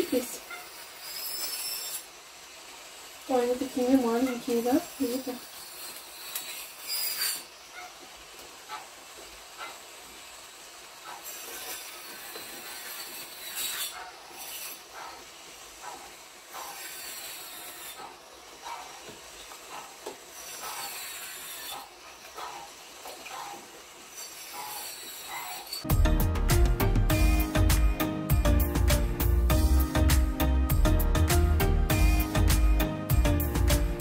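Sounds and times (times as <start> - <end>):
hiss: 0.0 - 25.9.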